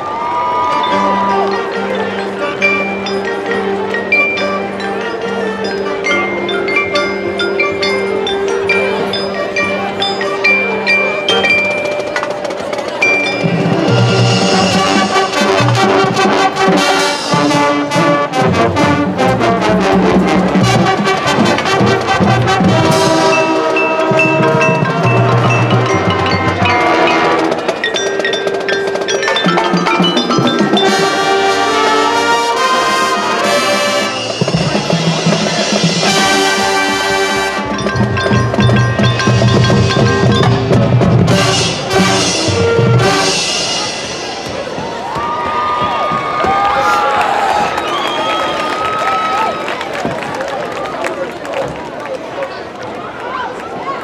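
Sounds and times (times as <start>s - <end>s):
marching percussion accents: 2.6s - 50.2s
brass section holding chords: 14.0s - 24.7s, 30.8s - 34.4s.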